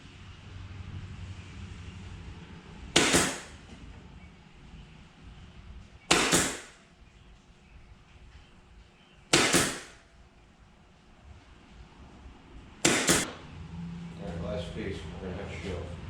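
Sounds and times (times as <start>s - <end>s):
pin nailer firing: 2.9s - 3.6s, 6.1s - 6.8s, 9.3s - 10.0s, 12.8s - 13.4s.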